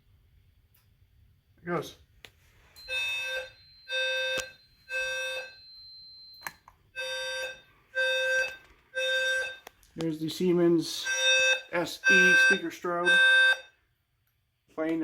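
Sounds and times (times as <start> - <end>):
low-frequency alarm beeps: 2.8 - 9.7, 10.8 - 13.8.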